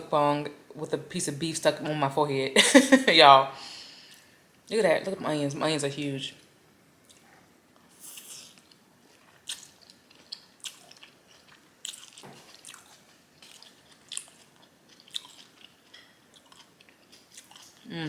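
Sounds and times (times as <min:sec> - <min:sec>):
person chewing noodles: 0:07.0 - 0:18.0.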